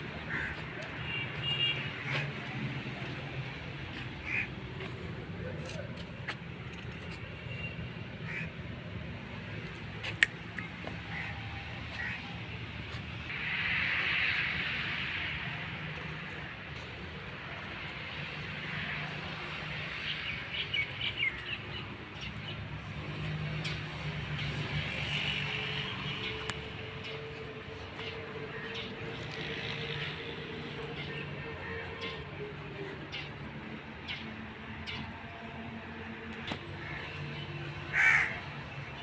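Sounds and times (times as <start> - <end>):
birds chirping: 19.9 - 38.2.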